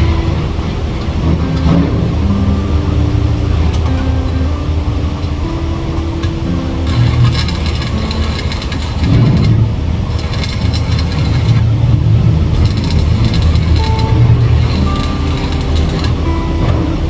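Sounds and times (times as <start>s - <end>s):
heavy machine engine running: 0.0s - 17.0s
metallic clattering and rattling: 6.9s - 16.8s.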